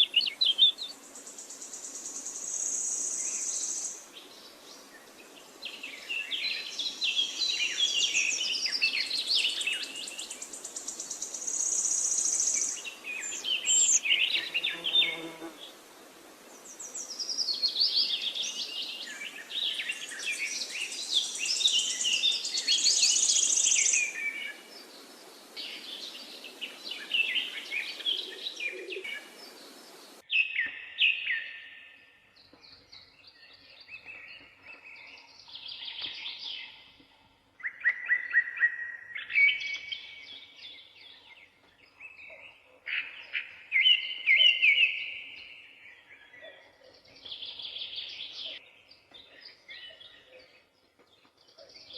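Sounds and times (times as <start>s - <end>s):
birds chirping and singing: 0.0s - 15.6s, 16.6s - 51.9s
hissy background: 0.0s - 30.2s.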